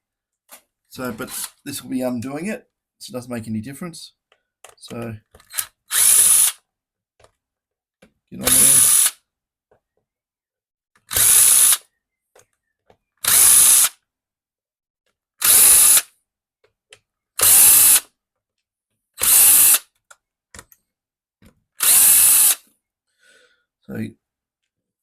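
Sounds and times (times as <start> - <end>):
drill spinning out screws: 1.0 - 1.6, 5.3 - 6.6, 8.4 - 9.2, 11.0 - 11.8, 13.2 - 14.0, 15.4 - 16.1, 17.4 - 18.1, 19.2 - 19.9, 21.8 - 22.6.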